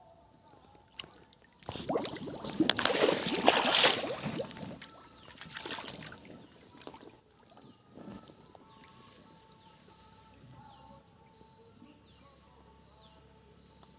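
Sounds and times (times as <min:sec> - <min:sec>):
water splashing and sloshing: 0:00.9 - 0:09.3.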